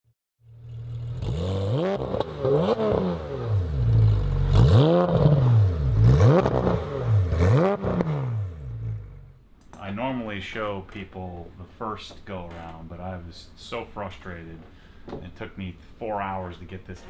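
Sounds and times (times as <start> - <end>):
car engine revving: 0.6 - 9.4.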